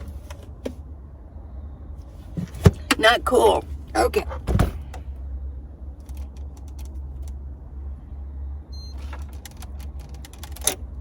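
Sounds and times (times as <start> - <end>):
portable fridge clicks and knocks: 4.4 - 4.9.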